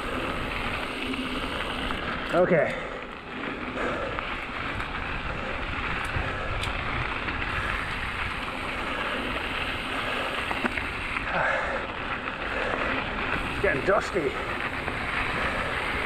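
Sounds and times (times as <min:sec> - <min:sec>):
tyres rolling on gravel: 0:00.0 - 0:16.0
wind on microphone: 0:04.3 - 0:09.9.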